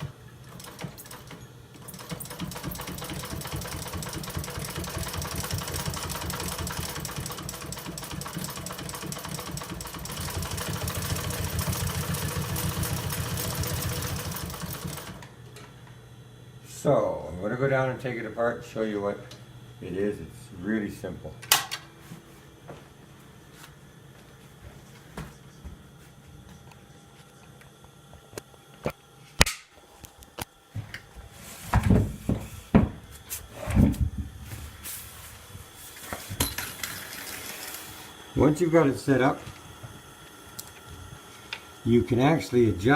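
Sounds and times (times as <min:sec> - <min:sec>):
sewing machine stitching: 0:00.0 - 0:15.2.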